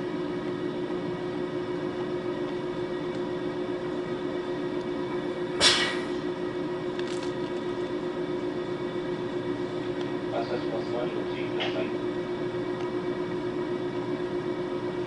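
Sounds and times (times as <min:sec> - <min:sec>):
electrical equipment hum: 0:00.0 - 0:15.0
compressed air hiss: 0:05.6 - 0:06.2.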